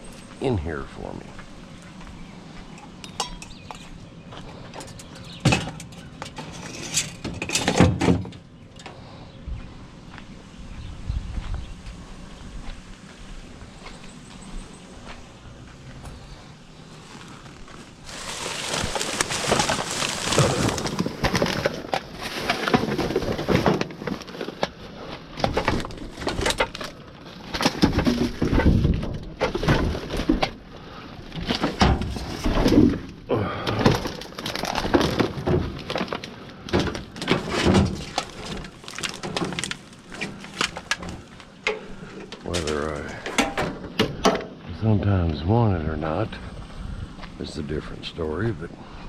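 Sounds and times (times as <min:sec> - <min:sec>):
junk clattering and scraping: 0:02.8 - 0:09.0, 0:17.2 - 0:45.0.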